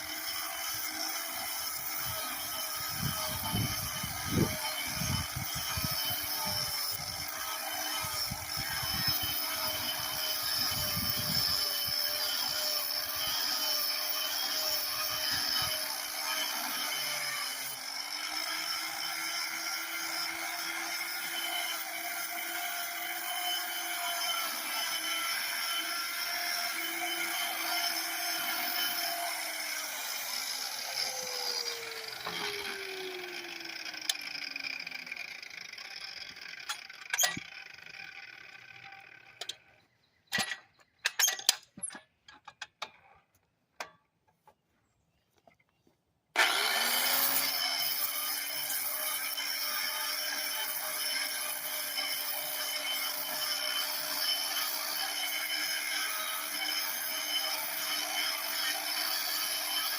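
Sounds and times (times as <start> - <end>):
angle grinder whine: 0.0 - 40.6, 46.4 - 59.9.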